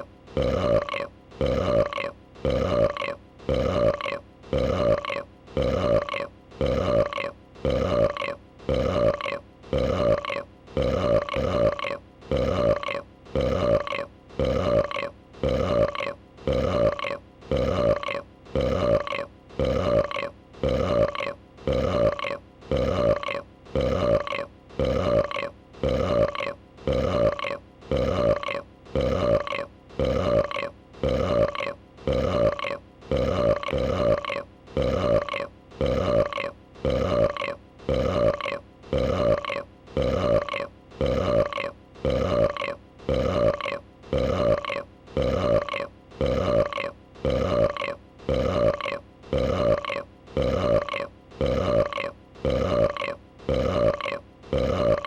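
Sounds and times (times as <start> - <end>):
dragon burp sound effect: 0.0 - 55.0.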